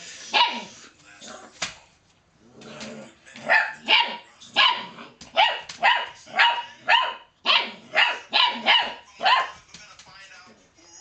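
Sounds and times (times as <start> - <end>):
puppy yapping: 3.5 - 9.5.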